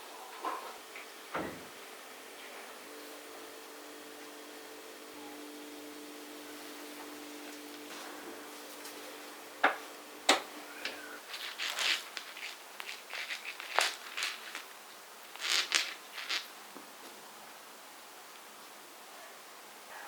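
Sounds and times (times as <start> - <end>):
scraping and rustling: 10.8 - 16.6.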